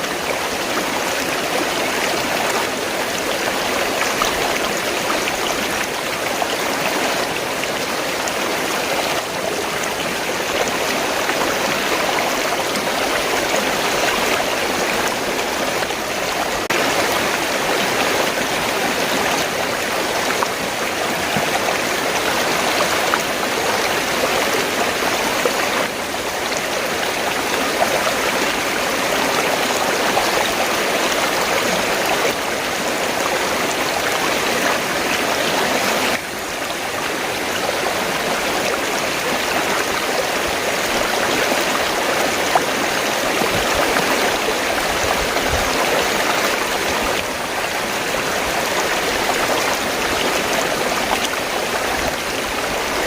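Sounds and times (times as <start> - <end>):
river water flowing: 0.0 - 53.0.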